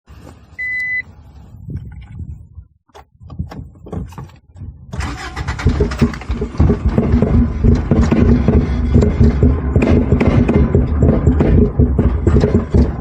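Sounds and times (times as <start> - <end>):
short electronic beep: 0.6 - 1.1
car engine starting and idling roughly: 4.9 - 13.0.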